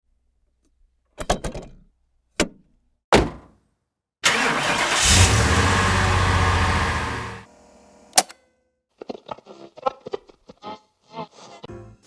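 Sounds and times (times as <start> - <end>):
car engine starting and running: 4.2 - 7.5.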